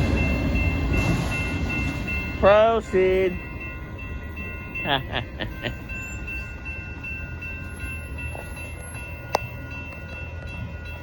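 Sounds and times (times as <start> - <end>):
crossing bell ringing: 0.0 - 11.0
freight train rumbling: 0.0 - 11.0.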